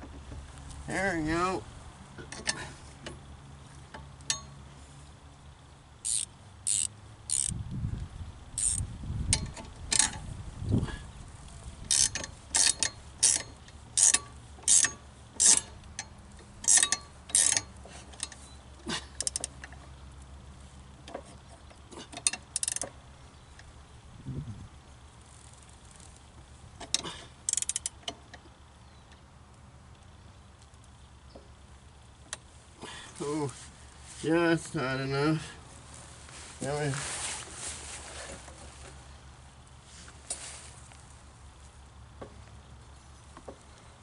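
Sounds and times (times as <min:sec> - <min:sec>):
ratchet wrench clicking: 0:06.0 - 0:07.6, 0:08.6 - 0:10.2, 0:11.9 - 0:18.4, 0:19.2 - 0:19.7, 0:22.1 - 0:23.0, 0:26.8 - 0:28.3.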